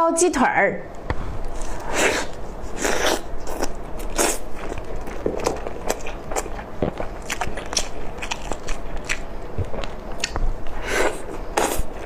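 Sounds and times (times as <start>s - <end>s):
close-miked biting and chewing: 1.5s - 12.0s.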